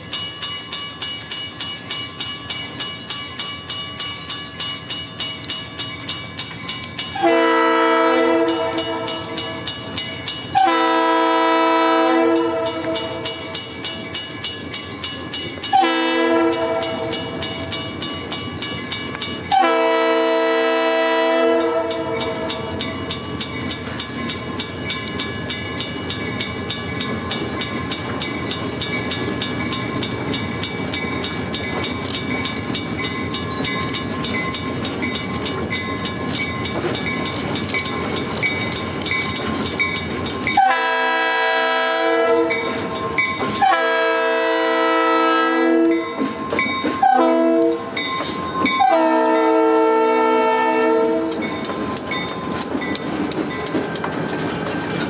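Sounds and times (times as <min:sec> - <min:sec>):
train wheels clicking on rail joints: 0:00.0 - 0:55.0
locomotive horn blasts: 0:07.2 - 0:09.6, 0:10.5 - 0:13.5, 0:15.7 - 0:17.3, 0:19.5 - 0:22.8, 0:40.6 - 0:42.6, 0:43.6 - 0:46.2, 0:47.0 - 0:47.9, 0:48.8 - 0:51.4.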